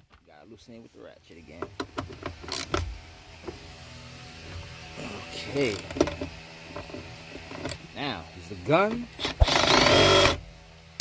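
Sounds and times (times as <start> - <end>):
hand ratchet clicking: 1.7 - 2.8, 9.1 - 10.4.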